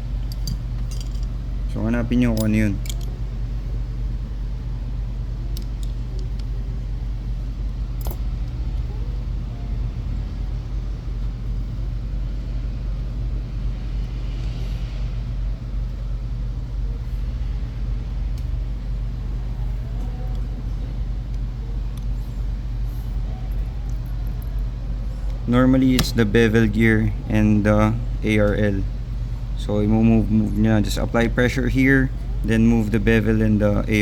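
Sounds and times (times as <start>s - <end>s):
low background rumble: 0.0s - 34.0s
small metal parts clicking: 0.2s - 1.4s, 2.3s - 3.1s, 8.0s - 8.2s.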